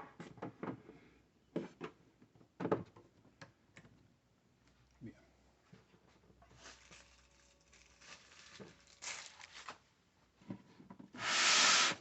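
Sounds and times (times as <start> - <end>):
rustling: 6.5 - 9.9.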